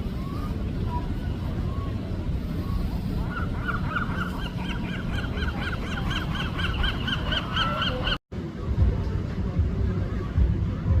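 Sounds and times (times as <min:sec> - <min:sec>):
steady low rumble: 0:00.0 - 0:11.0
bird squawking rapidly: 0:02.7 - 0:08.2.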